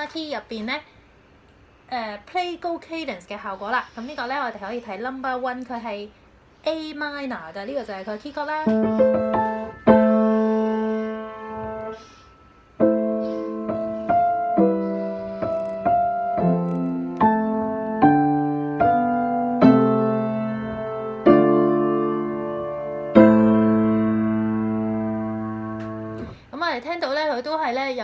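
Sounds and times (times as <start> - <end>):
piano chord: 8.6 - 26.3
piano melody: 8.6 - 26.3.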